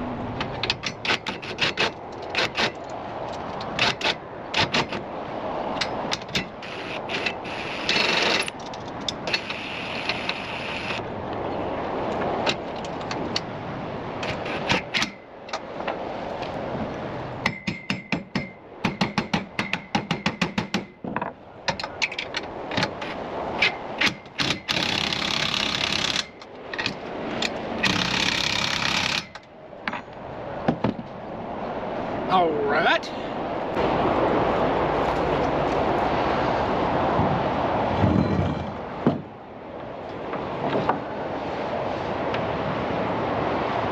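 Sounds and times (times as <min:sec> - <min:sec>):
rapid ratcheting clicks: 0:24.0 - 0:26.9, 0:27.8 - 0:29.5.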